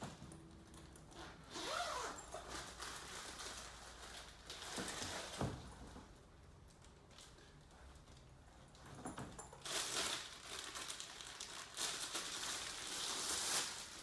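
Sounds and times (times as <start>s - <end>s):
packaging rustling and scraping: 1.0s - 6.2s, 9.4s - 14.0s.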